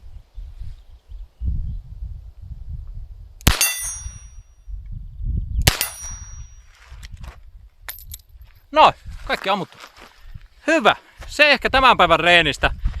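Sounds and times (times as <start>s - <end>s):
steel plate target ringing: 3.5s - 4.6s, 5.7s - 6.7s.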